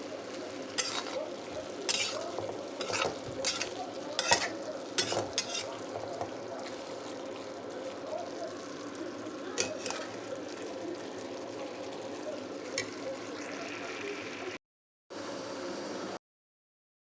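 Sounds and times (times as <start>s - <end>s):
food sizzling: 0.0s - 16.2s
spatula scraping a pan: 0.7s - 7.2s, 9.6s - 10.2s.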